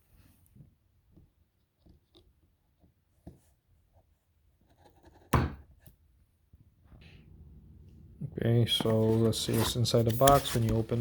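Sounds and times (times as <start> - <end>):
cardboard box being handled: 8.7 - 11.0.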